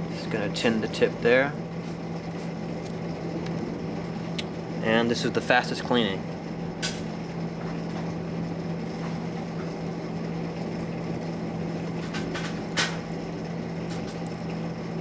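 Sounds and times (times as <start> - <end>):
low hum: 8.8 - 15.0.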